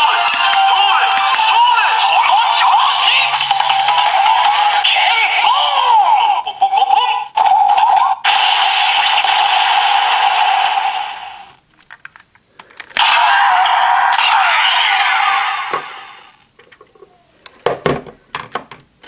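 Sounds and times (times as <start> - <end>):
clicks: 0.0 - 2.2
toy speaker electronic music: 0.0 - 11.4, 13.0 - 16.3.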